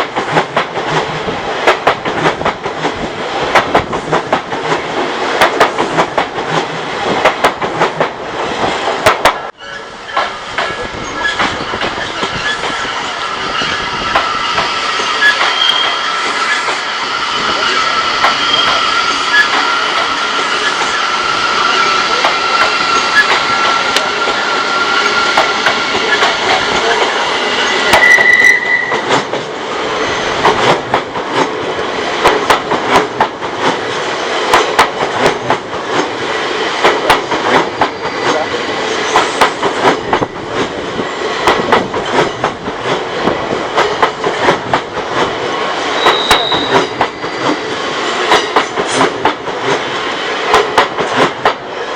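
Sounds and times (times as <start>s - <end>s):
train wheels squealing: 9.6s - 26.2s, 27.6s - 29.1s, 46.0s - 47.6s.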